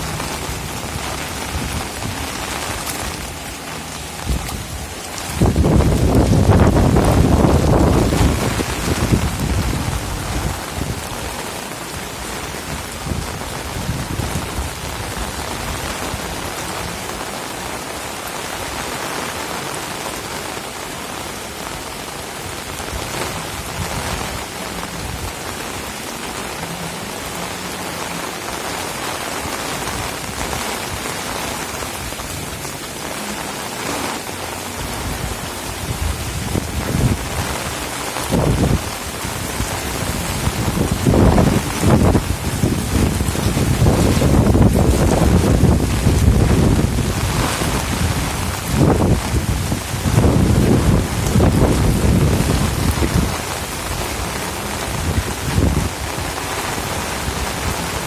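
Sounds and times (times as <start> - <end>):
heavy rain falling: 0.0 - 58.0.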